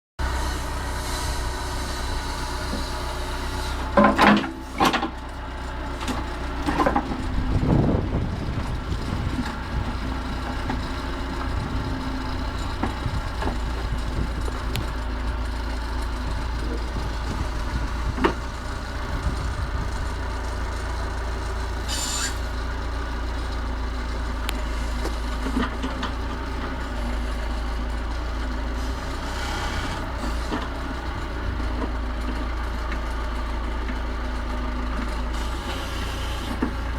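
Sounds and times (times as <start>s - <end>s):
diesel engine running: 0.2s - 36.9s
metal clanks and knocks: 3.9s - 5.2s
short hiss: 21.9s - 22.4s.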